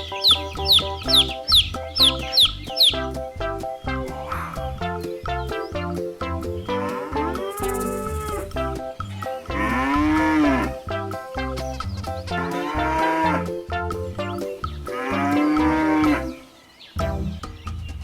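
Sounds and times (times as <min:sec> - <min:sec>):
background music with beat: 0:00.0 - 0:18.0
cow mooing: 0:06.7 - 0:08.5, 0:09.5 - 0:10.8, 0:12.3 - 0:13.6, 0:14.9 - 0:16.4.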